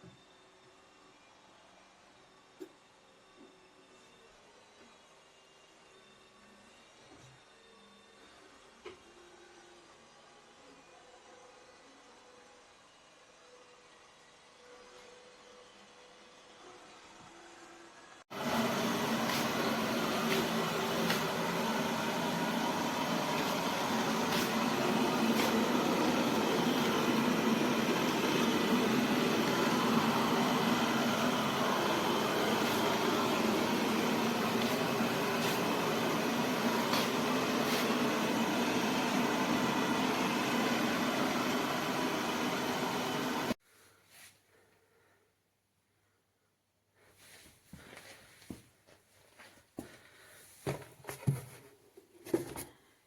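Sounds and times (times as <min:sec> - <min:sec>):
robot vacuum suction motor: 0:18.3 - 0:43.6.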